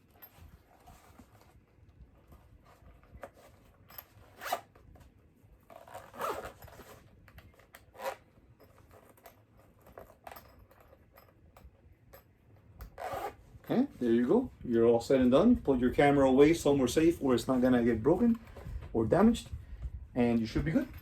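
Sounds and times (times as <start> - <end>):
zipper pulled: 0.0 - 1.6, 2.3 - 10.9, 12.8 - 14.0.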